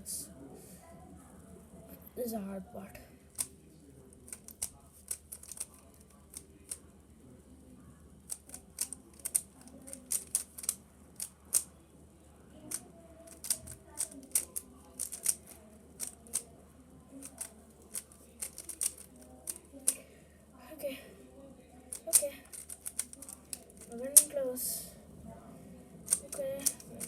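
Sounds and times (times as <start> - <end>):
puzzle cube clicking as turned: 4.3 - 6.8, 8.3 - 11.7, 12.7 - 16.5, 17.2 - 19.9, 21.9 - 24.3, 26.1 - 27.0.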